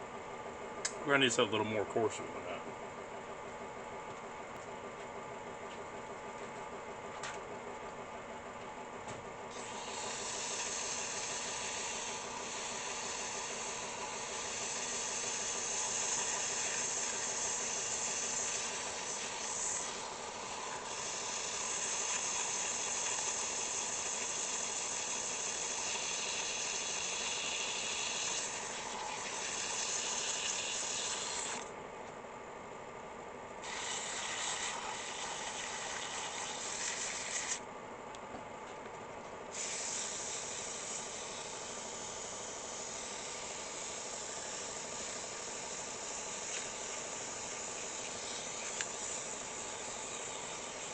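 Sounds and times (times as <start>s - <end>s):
power tool motor running: 9.5s - 31.7s, 33.6s - 37.6s, 39.5s - 50.9s
sandpaper hissing on metal: 9.6s - 28.6s, 39.5s - 50.9s.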